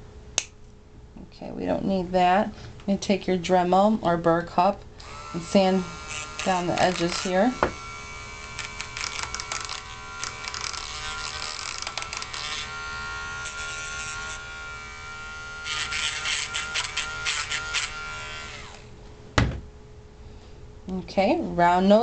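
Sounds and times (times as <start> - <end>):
rotary tool whining: 5.0 - 18.9
grinding copper wire: 5.3 - 17.8.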